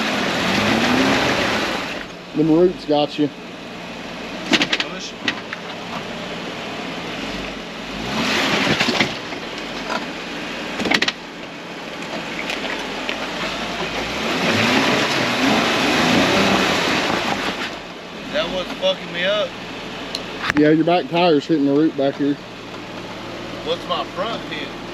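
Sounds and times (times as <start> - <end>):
engine running under load: 0.0 - 24.9
tires scrabbling on roots: 0.0 - 24.9
sharp knock of tires: 4.4 - 5.8, 10.8 - 11.2.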